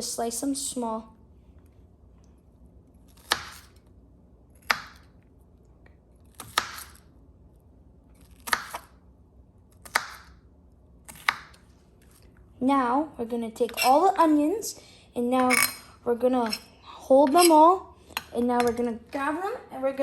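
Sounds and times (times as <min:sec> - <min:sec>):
knife slicing onions: 0:03.1 - 0:03.8, 0:08.2 - 0:08.9, 0:16.4 - 0:17.6.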